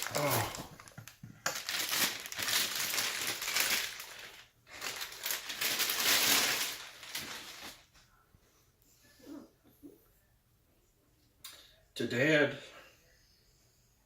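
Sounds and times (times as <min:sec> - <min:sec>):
packing material crinkling: 0:00.0 - 0:07.9.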